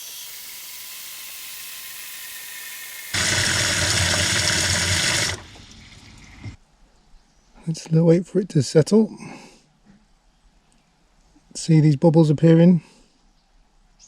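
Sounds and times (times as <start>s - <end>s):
water running into a bin: 2.9s - 6.6s.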